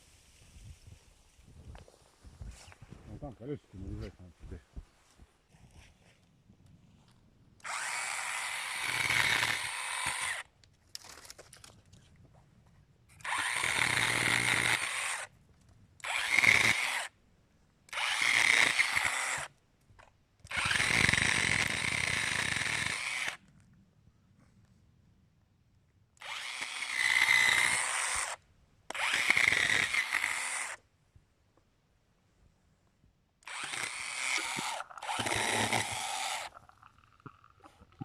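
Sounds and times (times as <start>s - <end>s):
electric power tool running: 7.6s - 10.4s, 13.2s - 15.2s, 16.0s - 17.1s, 20.5s - 23.4s, 28.9s - 30.8s, 33.5s - 36.6s.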